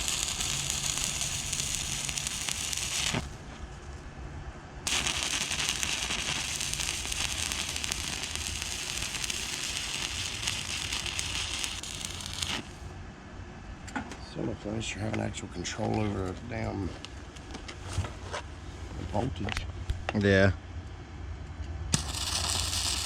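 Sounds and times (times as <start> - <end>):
welder arc crackling and sizzling: 0.0 - 3.4, 4.9 - 12.9, 21.9 - 23.0.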